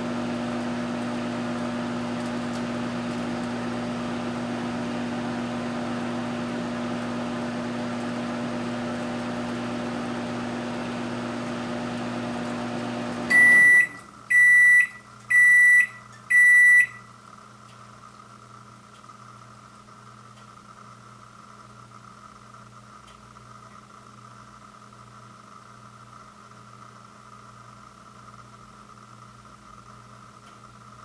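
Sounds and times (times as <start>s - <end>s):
microwave oven humming: 0.0s - 31.0s
loud beeps: 13.3s - 17.1s.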